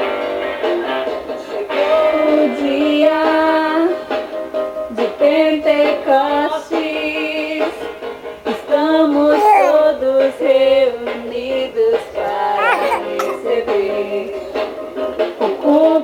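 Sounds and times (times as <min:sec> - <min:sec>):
woman singing recorded song: 0:04.9 - 0:07.8, 0:15.4 - 0:16.0.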